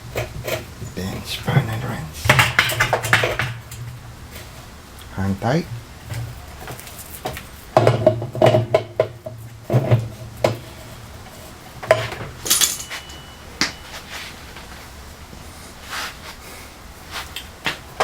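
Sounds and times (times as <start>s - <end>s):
spanner wrench clanking on metal: 11.9s - 13.4s.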